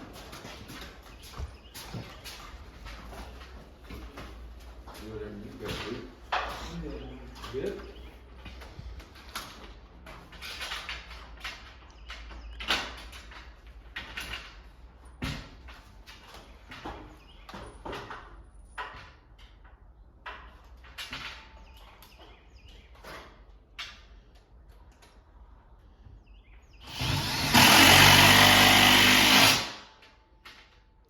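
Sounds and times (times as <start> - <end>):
power drill running: 26.8 - 29.9.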